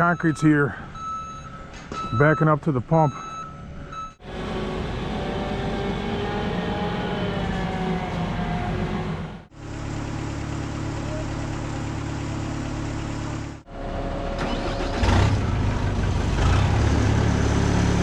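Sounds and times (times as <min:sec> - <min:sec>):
deep engine: 0:00.0 - 0:18.0
heavy truck engines running: 0:06.4 - 0:18.0.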